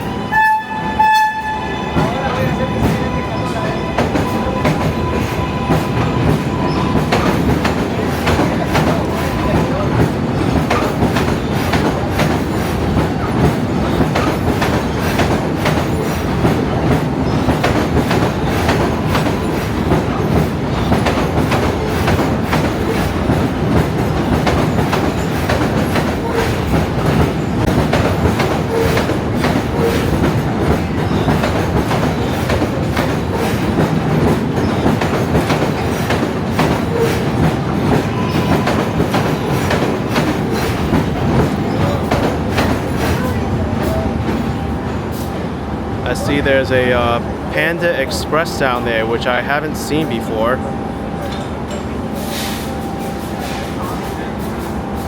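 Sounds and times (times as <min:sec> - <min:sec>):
subway train rumble: 0:00.0 - 0:55.0
wheels clacking over track joints: 0:01.2 - 0:44.7.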